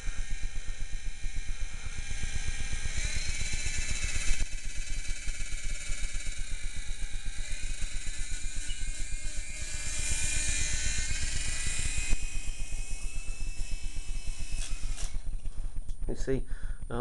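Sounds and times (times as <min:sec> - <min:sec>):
toy helicopter motor whining: 0:00.0 - 0:16.3
rotor fluttering: 0:00.0 - 0:17.0.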